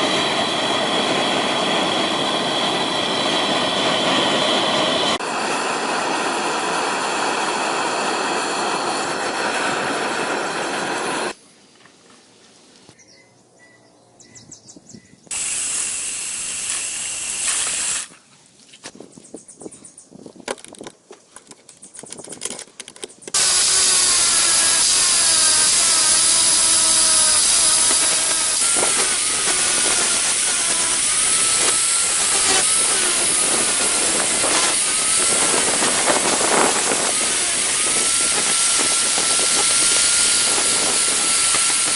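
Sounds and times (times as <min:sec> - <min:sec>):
power tool grinding metal: 0:15.3 - 0:18.1, 0:23.3 - 0:41.9.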